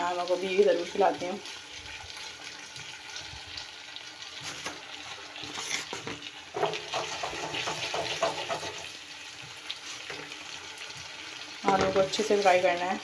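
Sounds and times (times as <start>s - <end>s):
potatoes sizzling in oil: 0.0s - 13.0s
spatula scraping pan: 4.4s - 9.0s.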